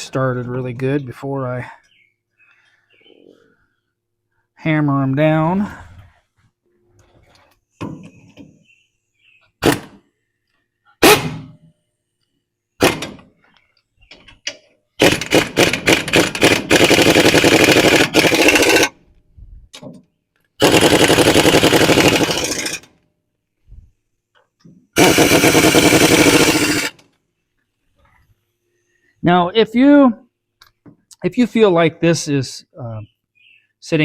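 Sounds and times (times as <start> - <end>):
impact wrench rattling bolts: 14.4 - 18.9, 20.6 - 22.9, 25.0 - 27.0.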